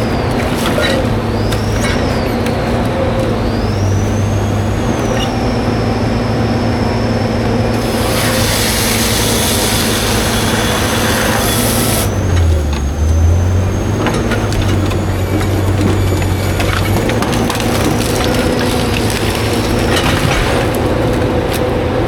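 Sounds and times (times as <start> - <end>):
high hydraulic whine: 0.0 - 16.8
diesel engine running: 0.0 - 22.0
loud hiss: 7.8 - 12.1.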